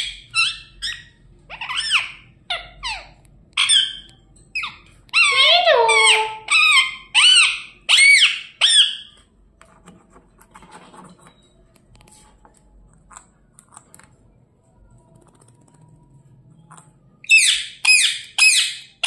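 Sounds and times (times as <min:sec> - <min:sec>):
parrot squawking: 0:00.0 - 0:09.2, 0:17.2 - 0:19.0.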